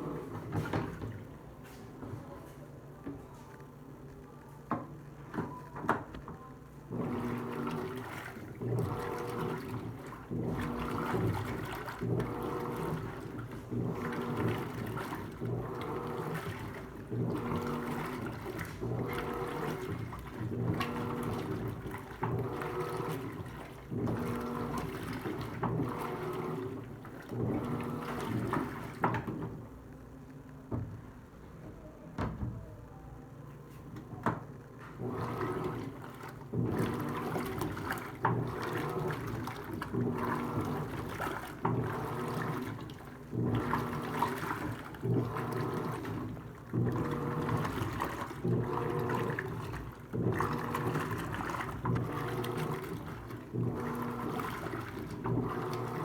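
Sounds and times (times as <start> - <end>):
washing machine motor hum: 0.0 - 56.0
water sloshing: 6.9 - 29.5, 35.0 - 56.0.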